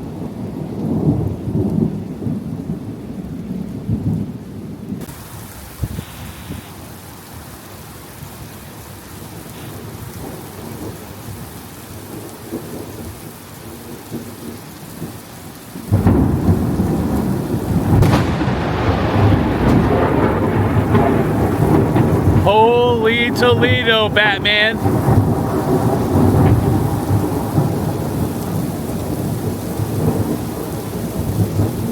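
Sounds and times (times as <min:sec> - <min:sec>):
steady rain falling: 0:00.0 - 0:31.9
loud thunderclap rumbling: 0:15.9 - 0:22.4, 0:24.8 - 0:31.9.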